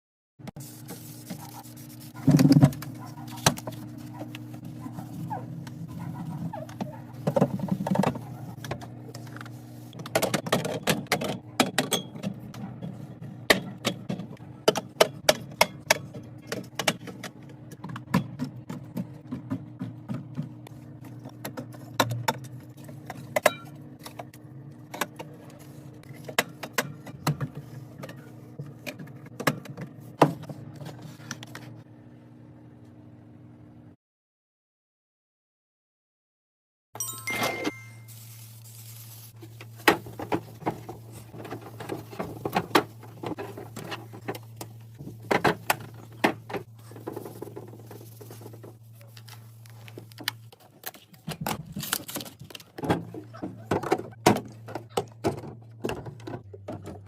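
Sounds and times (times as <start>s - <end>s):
items clinking into a fridge: 5.9s - 24.3s, 37.0s - 38.6s, 39.4s - 57.0s.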